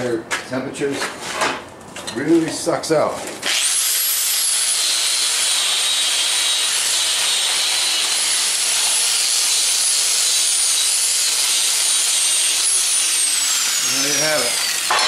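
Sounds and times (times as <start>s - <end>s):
handheld grinder grinding metal: 3.4s - 15.0s.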